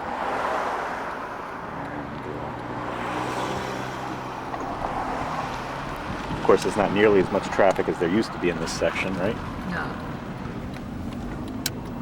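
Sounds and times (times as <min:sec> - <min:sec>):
road and engine noise: 0:00.0 - 0:12.0.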